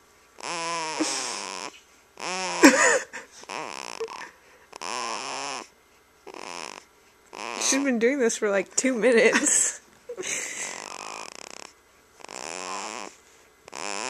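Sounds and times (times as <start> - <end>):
baby snoring: 0.4 - 2.8, 3.4 - 7.9, 10.6 - 14.0.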